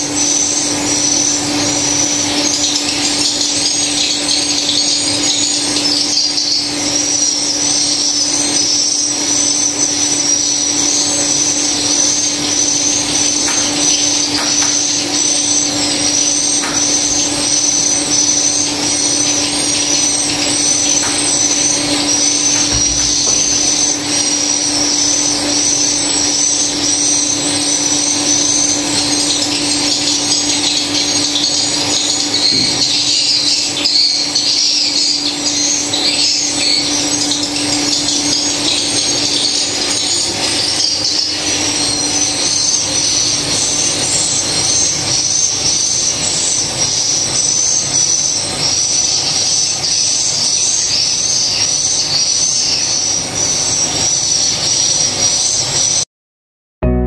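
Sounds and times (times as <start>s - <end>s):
swiftlet chirps: 8.4s - 26.4s.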